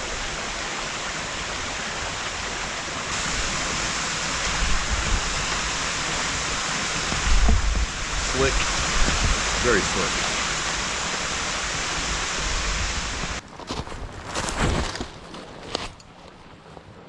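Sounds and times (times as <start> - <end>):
flowing water rushing: 0.0 - 13.4
low thumps: 7.0 - 9.6.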